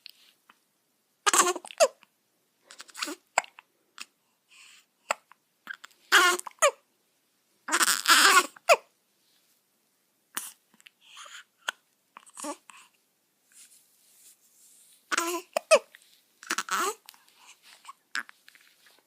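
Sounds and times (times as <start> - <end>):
baby hiccupping: 1.2 - 2.0, 7.7 - 8.9, 15.1 - 17.2.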